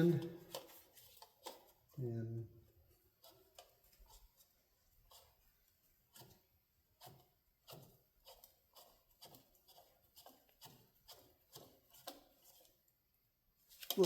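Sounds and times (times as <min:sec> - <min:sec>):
hand rubbing oil filter: 0:00.0 - 0:02.1.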